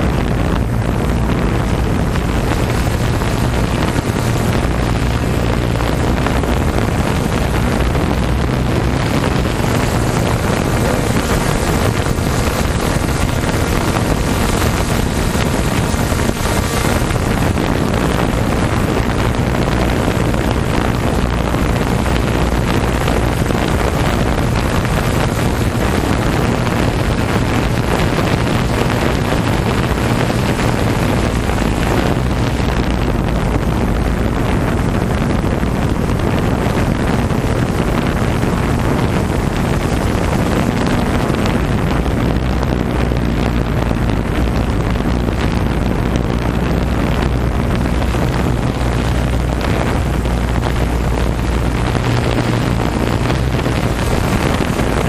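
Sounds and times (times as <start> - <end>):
jet ski engines droning: 0.0 - 55.0
wind buffeting microphone: 0.0 - 55.0.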